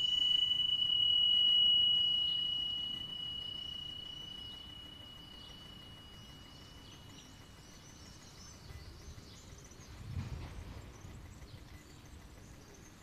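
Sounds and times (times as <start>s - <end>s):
steady high tone: 0.0s - 8.7s
small birds chirping: 2.0s - 13.0s.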